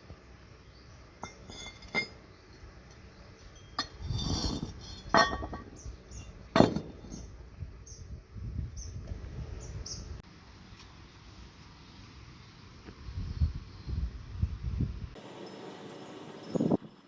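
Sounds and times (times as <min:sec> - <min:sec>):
metal tools clinking: 0:01.2 - 0:07.4
scraping rustle: 0:03.6 - 0:07.4.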